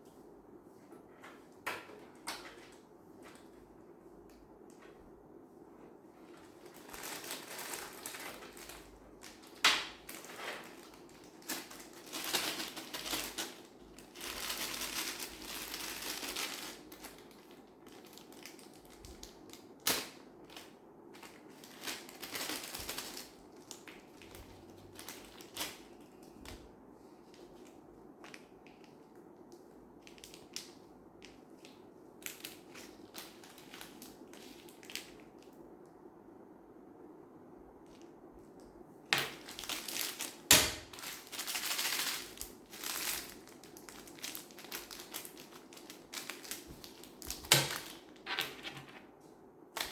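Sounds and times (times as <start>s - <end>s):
packaging rustling and crinkling: 6.1s - 29.2s, 30.0s - 35.6s, 39.1s - 49.2s.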